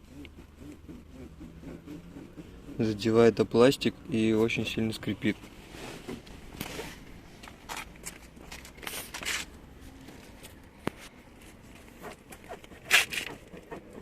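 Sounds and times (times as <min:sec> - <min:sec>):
plastic trim rubbing and creaking: 0:00.0 - 0:03.6, 0:11.9 - 0:14.0
plastic scrape: 0:05.6 - 0:09.6, 0:11.9 - 0:14.0.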